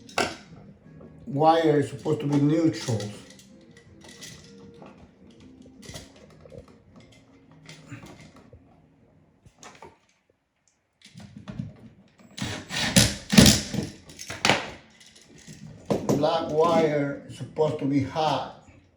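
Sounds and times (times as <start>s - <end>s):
clattering and rustling: 1.9s - 10.3s, 11.0s - 16.9s.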